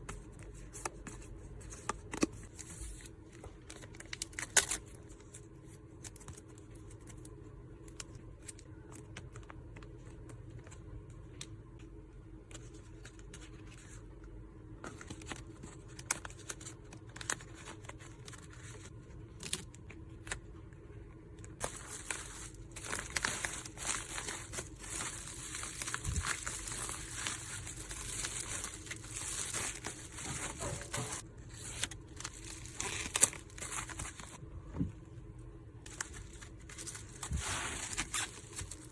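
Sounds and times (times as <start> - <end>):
packaging crinkling and rustling: 21.6 - 34.4, 35.9 - 38.9.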